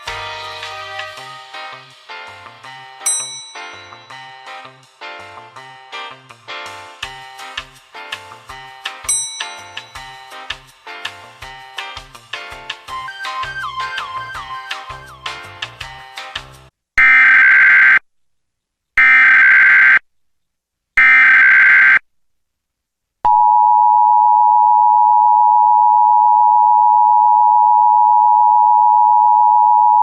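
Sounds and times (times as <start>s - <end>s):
two-tone alert alarm: 19.0s - 20.0s.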